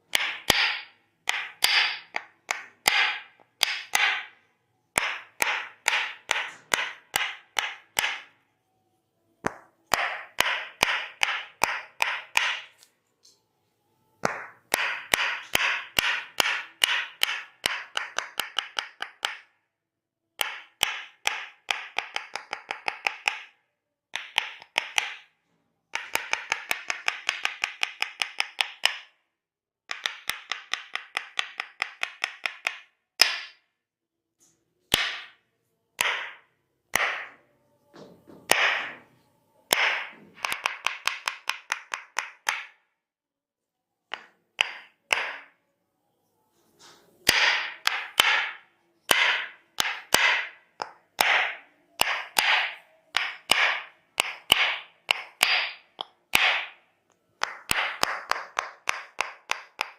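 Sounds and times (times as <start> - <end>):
percussive massage strikes: 0.1 - 4.3, 5.0 - 8.3, 9.4 - 12.8, 14.2 - 19.5, 20.4 - 23.6, 36.0 - 37.4, 38.0 - 39.0, 39.7 - 42.8, 44.1 - 45.5, 47.3 - 56.8, 57.4 - 59.9.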